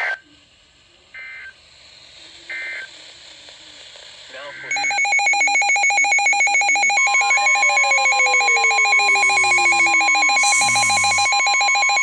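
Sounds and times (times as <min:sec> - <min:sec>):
rapidly pulsing electronic beep: 0:04.7 - 0:12.0
steady warning tone: 0:04.7 - 0:12.0
static bursts: 0:08.8 - 0:12.0.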